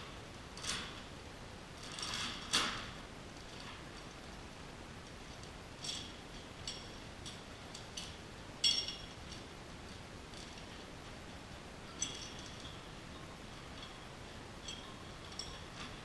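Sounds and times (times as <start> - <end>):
metal tools clinking: 14.6 - 16.0.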